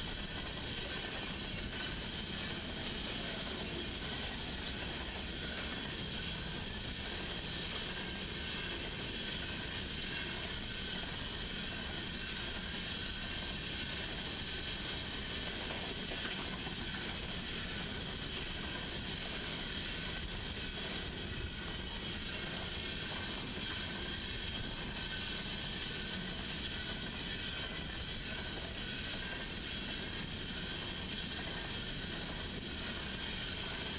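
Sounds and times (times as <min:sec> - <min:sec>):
train rolling past: 0:00.0 - 0:33.9.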